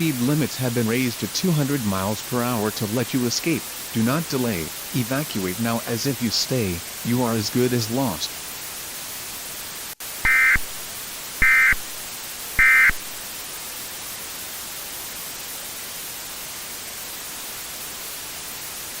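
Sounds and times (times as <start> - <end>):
steady hiss: 0.0 - 19.0
shrill data tone bursts: 10.2 - 10.6, 11.4 - 11.8, 12.6 - 13.0.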